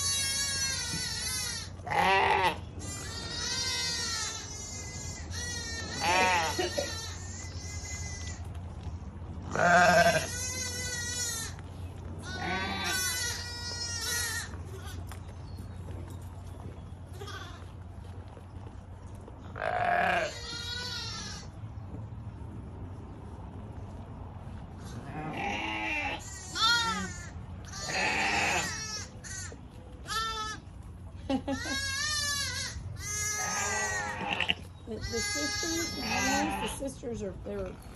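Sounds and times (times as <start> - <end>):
sheep bleating: 0.0 - 8.5, 9.5 - 11.6, 12.2 - 15.1, 17.2 - 17.7, 19.5 - 21.5, 24.8 - 30.6, 31.7 - 36.9.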